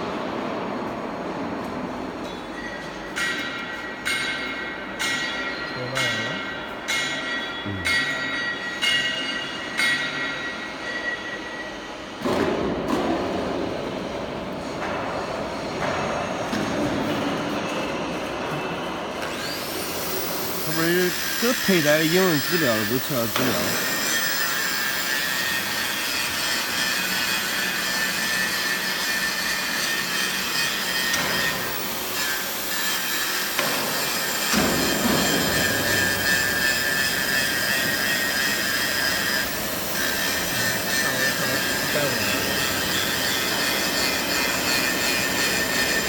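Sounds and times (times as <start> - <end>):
machine whirring: 19.2 - 46.0
high whining tones: 19.3 - 24.6.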